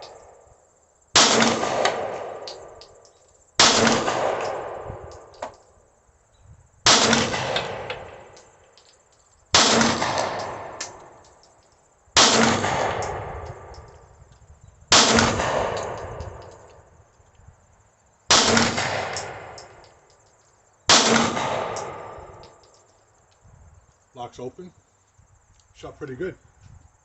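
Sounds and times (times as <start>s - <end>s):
pistol shots echoing: 1.2s - 3.0s, 3.6s - 5.5s, 6.9s - 8.5s, 9.5s - 11.4s, 12.2s - 13.9s, 14.9s - 16.8s, 18.3s - 20.0s, 20.9s - 22.8s
faint clicks: 7.9s - 9.4s, 10.2s - 11.8s, 21.7s - 24.0s.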